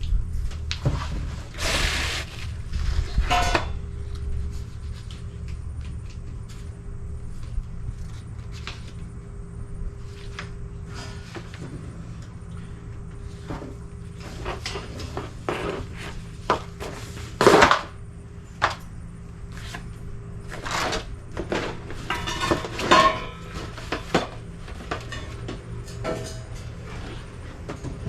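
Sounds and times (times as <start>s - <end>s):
steady low hum: 0.0s - 28.0s
scraping: 0.9s - 5.4s
clatter and knocks of handling: 20.5s - 28.0s.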